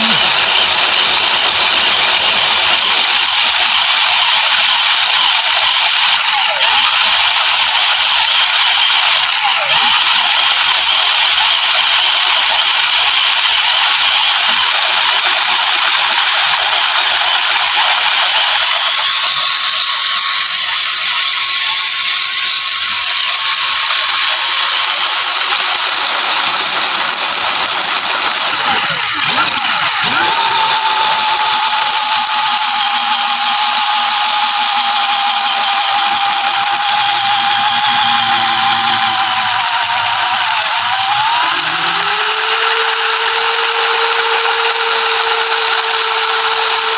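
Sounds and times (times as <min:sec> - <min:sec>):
clear whining tone: 0:00.0 - 0:11.0, 0:26.6 - 0:46.9
electric motor whine and gear rattle: 0:00.0 - 0:46.9.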